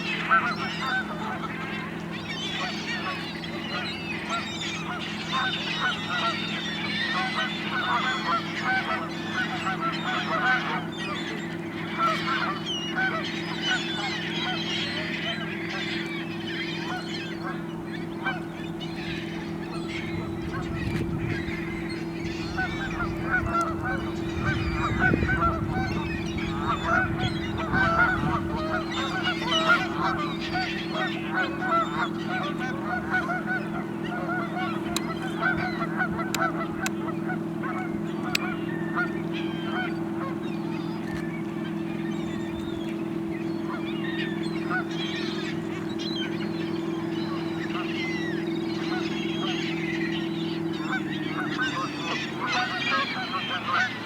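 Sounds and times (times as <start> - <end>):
geese honking: 0.0 - 54.0
steady low hum: 0.0 - 54.0.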